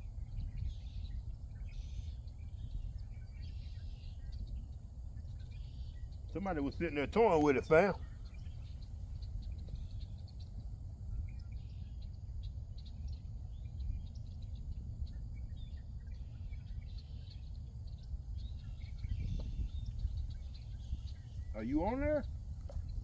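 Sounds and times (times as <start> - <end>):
birds chirping: 6.6 - 8.0.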